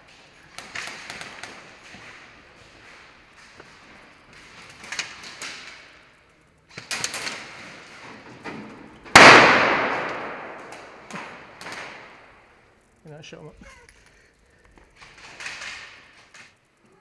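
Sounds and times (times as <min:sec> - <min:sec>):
airsoft gunfire cracks: 0:09.1 - 0:11.4
loud ringing bang: 0:09.2 - 0:10.7.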